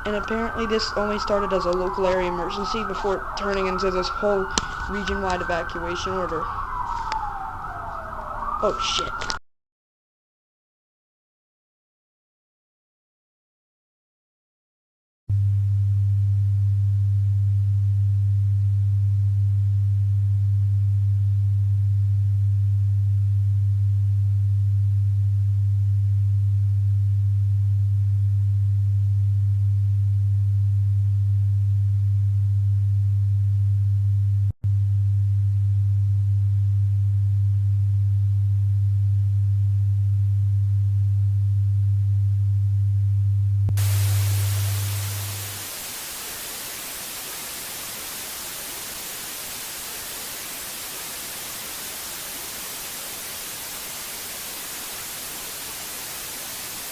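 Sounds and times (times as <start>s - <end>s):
steady low electronic tone: 15.3s - 56.9s
static hiss: 43.7s - 56.9s.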